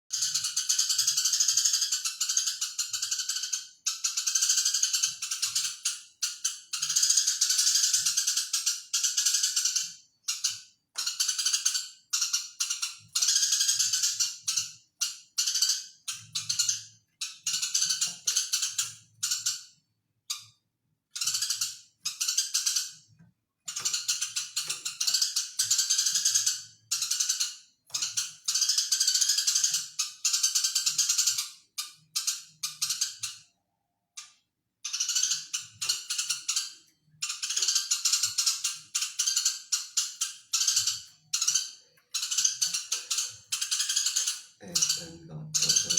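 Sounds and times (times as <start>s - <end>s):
sparrow chattering: 23.7s - 33.5s, 34.8s - 45.9s.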